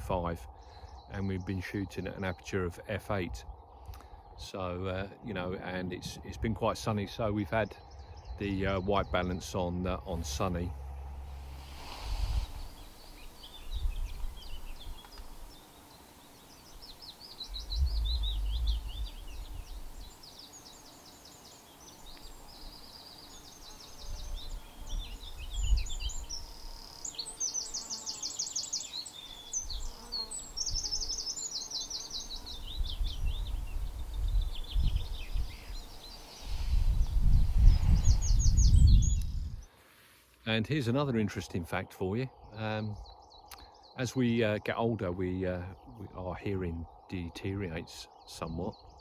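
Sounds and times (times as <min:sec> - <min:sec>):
songbirds singing: 0:00.0 - 0:39.8, 0:40.4 - 0:49.0
low rumble: 0:07.9 - 0:13.0, 0:17.6 - 0:19.8.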